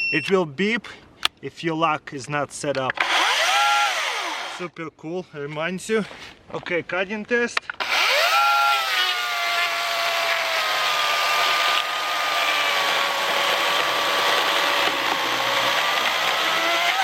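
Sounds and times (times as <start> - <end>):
chain cutting through log: 3.0 - 4.6, 7.8 - 17.0
electric chainsaw motor whine: 3.0 - 4.6, 7.8 - 17.0.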